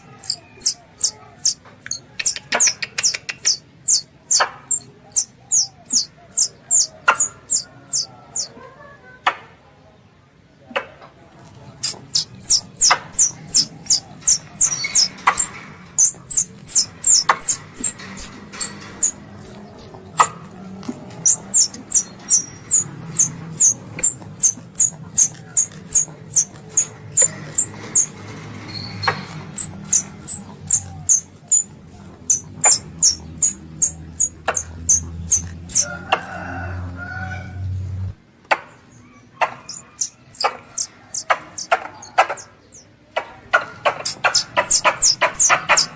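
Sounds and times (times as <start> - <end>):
squirrel call high-pitched chips: 0.0 - 8.6, 11.8 - 20.3, 21.1 - 28.1, 28.7 - 35.9, 39.4 - 42.8, 43.8 - 45.9.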